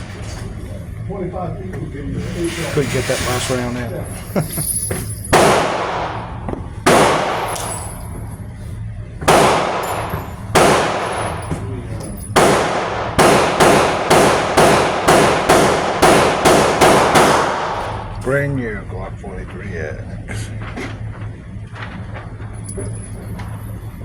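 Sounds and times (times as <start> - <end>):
pistol shots echoing: 5.3 - 8.1, 9.2 - 18.2.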